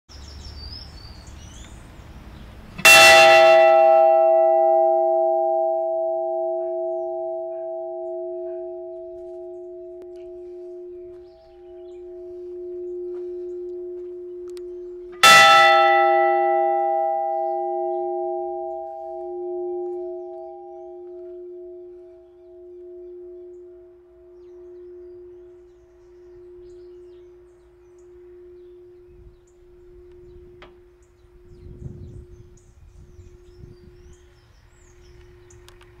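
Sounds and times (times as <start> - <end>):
bell ringing: 2.8 - 21.7.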